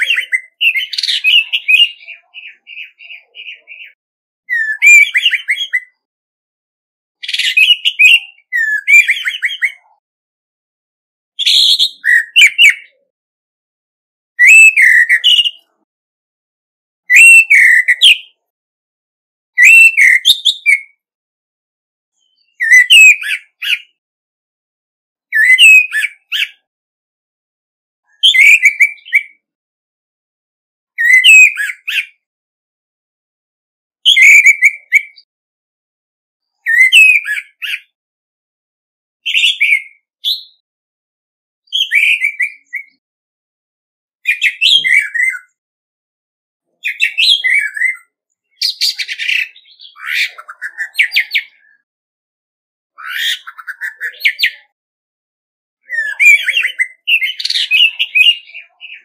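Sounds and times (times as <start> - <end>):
thrush singing whistled notes: 3.8 - 6.1, 7.2 - 9.8, 11.4 - 13.0, 14.4 - 15.8, 17.0 - 18.4, 19.5 - 21.0, 22.2 - 24.0, 25.3 - 26.7, 28.2 - 29.4, 31.0 - 32.2, 36.6 - 37.8, 41.7 - 43.0, 44.3 - 45.5.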